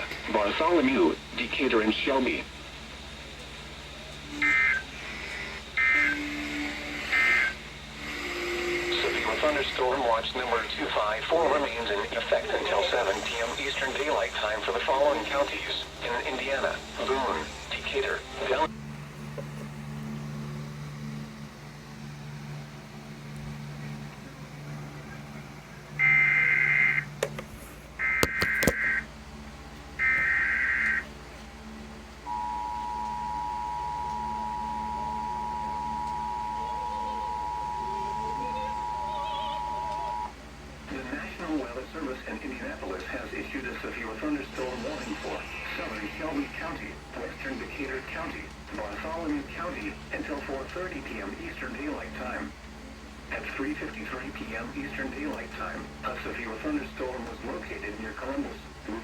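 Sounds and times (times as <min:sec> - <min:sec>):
screeching digital data tones: 0:04.3 - 0:09.8, 0:25.1 - 0:27.2, 0:30.0 - 0:31.1, 0:32.3 - 0:40.3
buzzy digital data bursts: 0:04.3 - 0:18.7, 0:19.8 - 0:27.2, 0:30.0 - 0:31.0
sharp clicks: 0:28.1 - 0:29.0.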